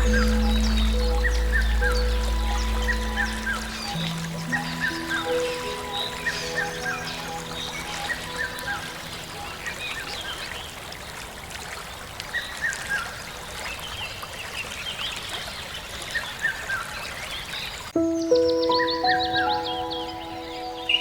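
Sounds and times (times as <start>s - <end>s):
birds chirping: 0.0s - 11.2s, 16.2s - 21.0s
outdoor ambience hiss: 0.0s - 12.4s.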